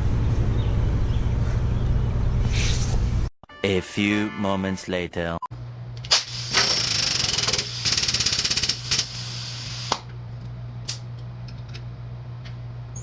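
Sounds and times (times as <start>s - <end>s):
impact wrench hammering: 6.1s - 10.0s.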